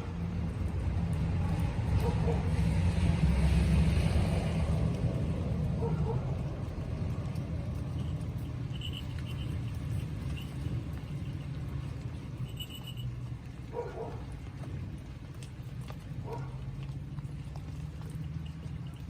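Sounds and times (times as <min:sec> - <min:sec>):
low outdoor rumble: 0:00.0 - 0:19.0
faint high tinkles: 0:07.8 - 0:13.3.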